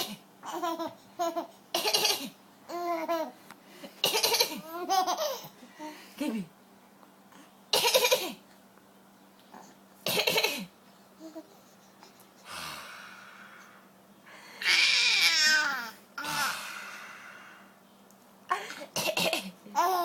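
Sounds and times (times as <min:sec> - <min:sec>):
baby laughing: 0:00.4 - 0:02.0, 0:04.1 - 0:05.5
coughing: 0:01.7 - 0:02.4, 0:04.0 - 0:04.7, 0:07.7 - 0:08.4, 0:10.0 - 0:10.7, 0:18.5 - 0:19.6.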